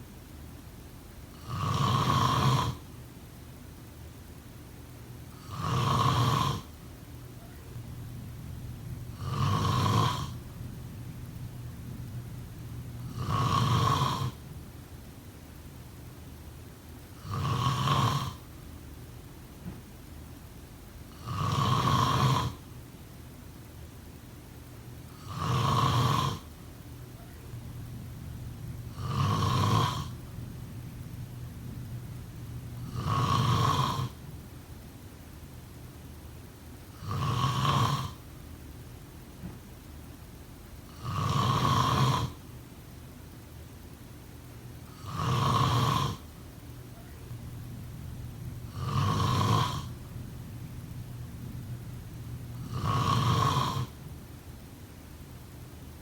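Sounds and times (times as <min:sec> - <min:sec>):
person snoring: 0:01.3 - 0:02.8, 0:05.4 - 0:06.7, 0:09.0 - 0:10.6, 0:12.8 - 0:14.4, 0:17.2 - 0:18.4, 0:21.1 - 0:22.6, 0:25.2 - 0:26.5, 0:28.5 - 0:34.2, 0:37.0 - 0:38.2, 0:40.9 - 0:42.4, 0:44.9 - 0:46.3, 0:47.3 - 0:54.0.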